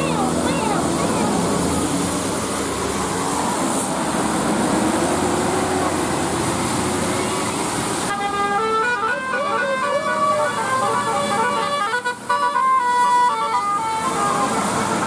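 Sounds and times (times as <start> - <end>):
bus engine and road noise: 0.0 - 15.0
multi-tone bus horn melody: 8.1 - 15.0.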